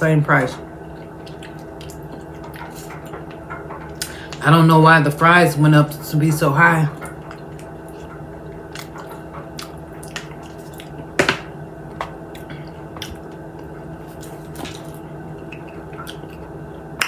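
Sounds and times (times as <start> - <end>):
steady low hum: 0.0 - 17.0
wet chewing and mouth smacking: 1.0 - 4.4, 7.0 - 11.1, 12.0 - 17.0.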